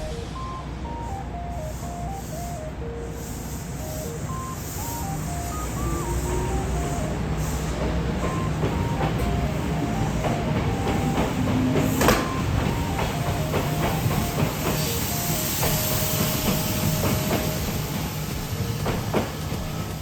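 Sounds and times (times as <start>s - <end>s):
train wheels clattering over joints: 6.4s - 20.0s.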